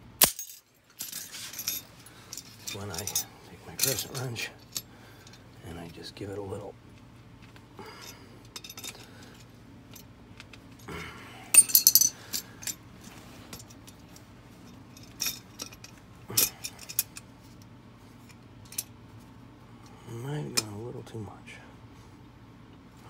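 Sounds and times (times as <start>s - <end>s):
metal trap parts clinking: 0.2s - 6.0s, 7.9s - 10.6s, 11.5s - 12.8s, 14.8s - 17.3s.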